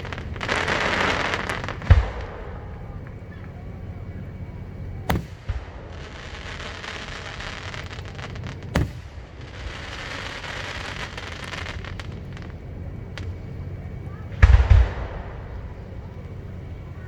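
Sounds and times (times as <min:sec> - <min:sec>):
firework crackling: 0:00.0 - 0:17.0
firework shells bursting: 0:00.0 - 0:17.0.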